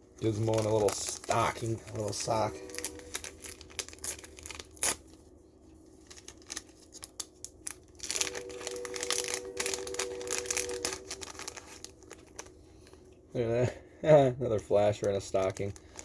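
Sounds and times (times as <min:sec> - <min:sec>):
packaging crinkling and rustling: 0:00.1 - 0:13.0, 0:14.7 - 0:16.0.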